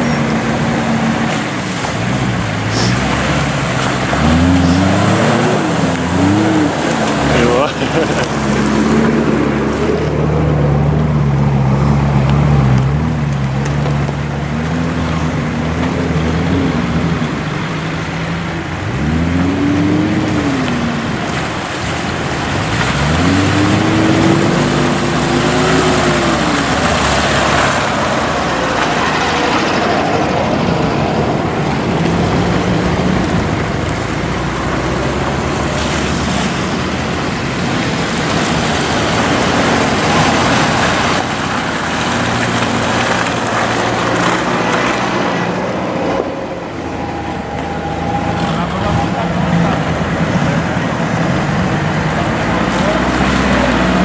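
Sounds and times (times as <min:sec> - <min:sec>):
engine revving: 0:00.0 - 0:54.0.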